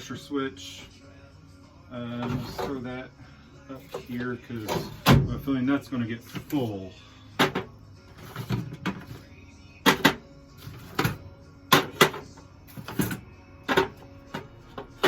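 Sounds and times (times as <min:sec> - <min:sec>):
plastic and parts clacking: 0:07.4 - 0:09.2, 0:09.8 - 0:15.0.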